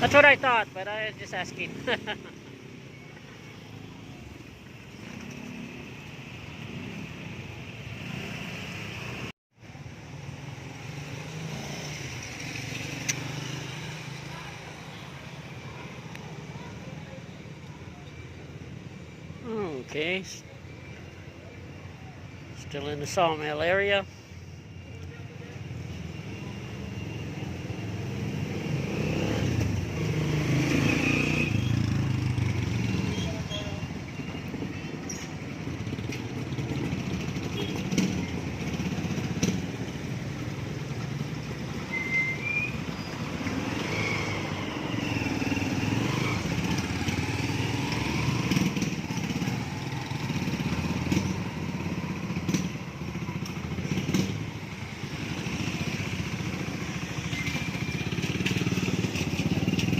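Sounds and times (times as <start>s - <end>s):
vehicle engines running: 22.8s - 59.9s.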